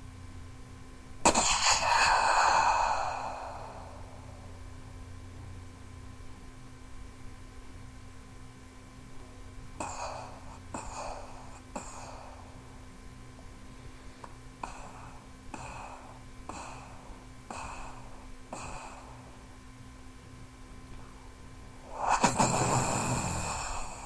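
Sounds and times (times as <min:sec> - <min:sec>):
breathy mouth blasts: 0:01.2 - 0:04.6, 0:09.8 - 0:12.6, 0:14.2 - 0:19.4, 0:21.8 - 0:24.0.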